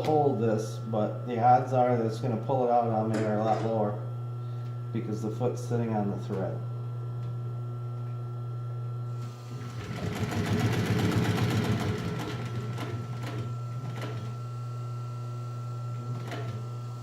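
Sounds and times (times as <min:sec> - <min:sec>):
sewing machine motor hum: 0:09.1 - 0:17.0
sewing machine stitching: 0:09.6 - 0:14.3, 0:16.1 - 0:16.6.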